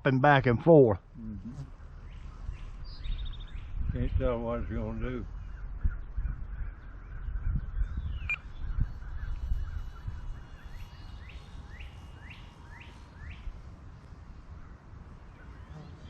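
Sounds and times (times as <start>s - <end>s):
bird chirping: 1.6s - 14.1s
wind buffeting microphone: 2.5s - 12.2s.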